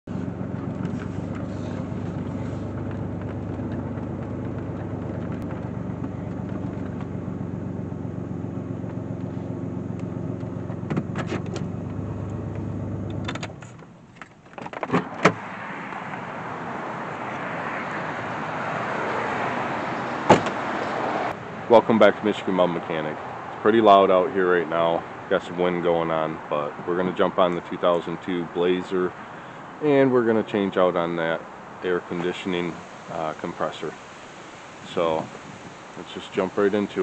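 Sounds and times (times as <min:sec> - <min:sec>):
car engine running: 0:00.0 - 0:13.8
sharp clicks and knocks: 0:10.0 - 0:11.7
wind noise on microphone: 0:34.8 - 0:36.0.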